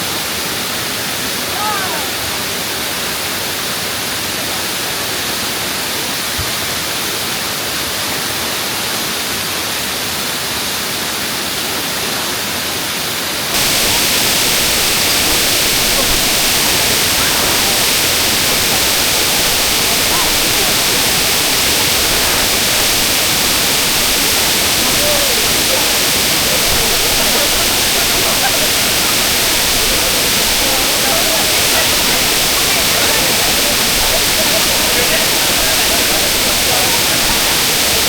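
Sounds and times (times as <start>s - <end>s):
waterfall roaring: 13.5s - 38.0s.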